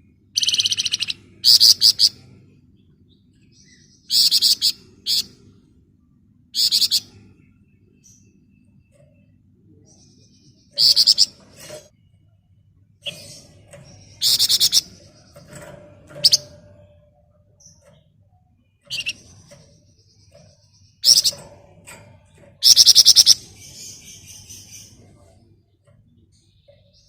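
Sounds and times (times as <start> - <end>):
bird rattling trill: 10.7 - 11.9, 13.0 - 18.0, 18.8 - 25.0.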